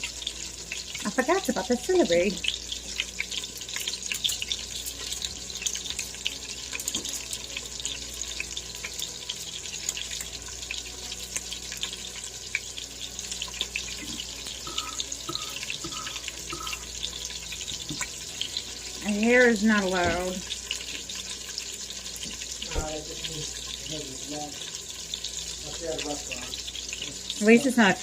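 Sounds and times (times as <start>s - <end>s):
tap water running into sink: 19.4s - 20.5s, 22.2s - 23.3s.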